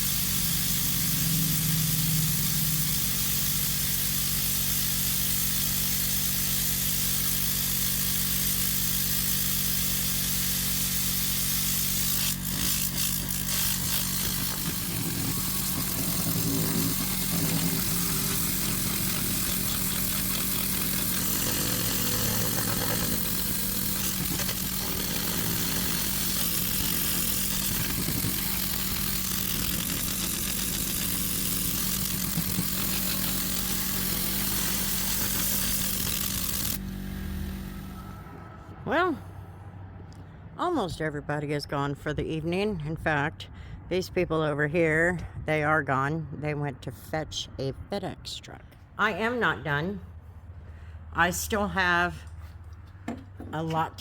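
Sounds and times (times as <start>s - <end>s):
motor running: 0.0s - 38.3s.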